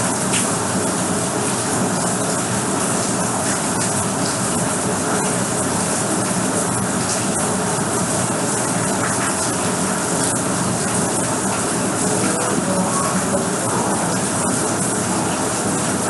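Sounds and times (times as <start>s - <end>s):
rain falling: 0.0s - 16.0s
water drip ticks: 0.2s - 0.6s, 1.5s - 12.4s.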